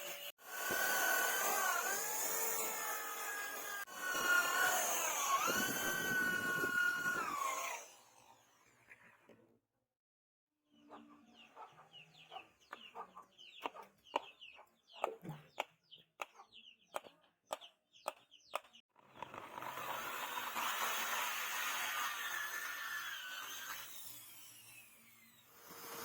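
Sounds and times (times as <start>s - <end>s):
chickens clucking: 10.8s - 17.2s
sharp taps and knocks: 15.0s - 18.8s.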